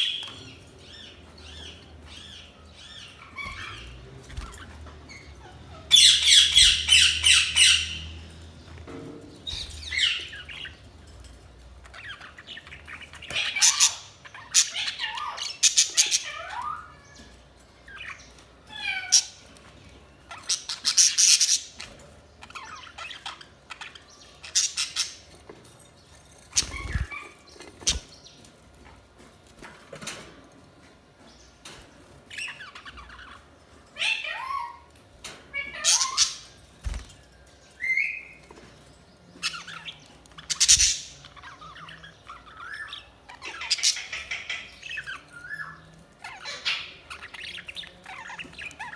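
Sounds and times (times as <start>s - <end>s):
budgerigars chirping: 0.0s - 8.3s, 9.4s - 10.8s, 11.8s - 17.2s, 17.9s - 25.4s, 26.5s - 28.5s, 35.6s - 37.0s, 39.4s - 48.9s.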